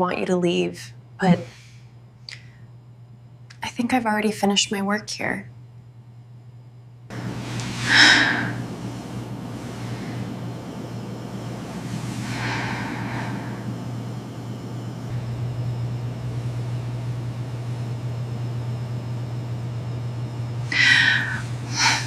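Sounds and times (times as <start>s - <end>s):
steady low hum: 0.0s - 22.0s
person breathing: 7.4s - 10.5s, 11.8s - 13.9s, 20.7s - 22.0s.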